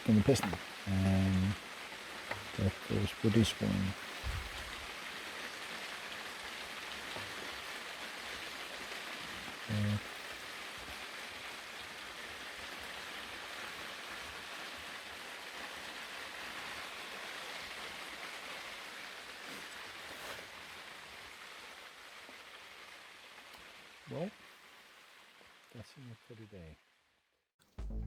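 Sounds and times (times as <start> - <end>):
rain pattering on a tent roof: 0.0 - 27.0
low hum: 27.7 - 28.0.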